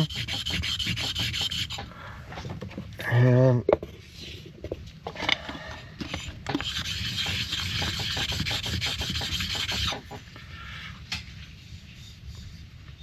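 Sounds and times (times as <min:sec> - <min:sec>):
metal part rubbed on sharpening stone: 0:00.0 - 0:01.8, 0:06.6 - 0:10.0.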